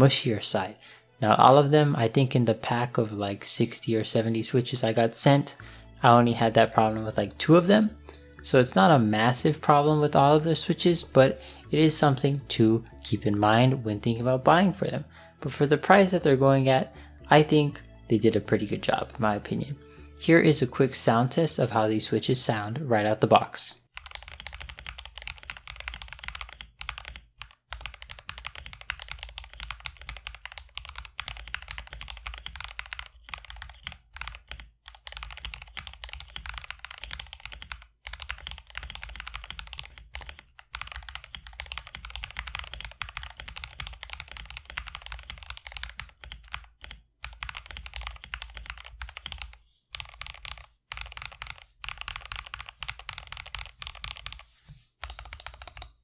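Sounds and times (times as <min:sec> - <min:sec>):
fast mechanical keyboard typing: 0:23.9 - 0:56.0.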